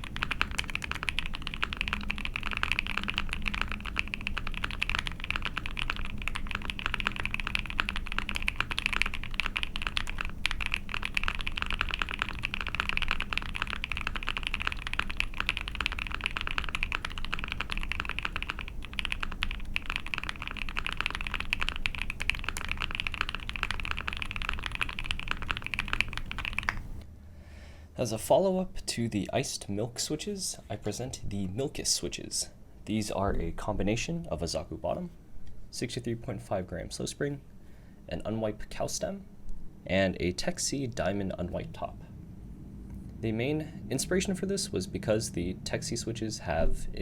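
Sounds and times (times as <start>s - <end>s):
fast mechanical keyboard typing: 0.0s - 27.0s.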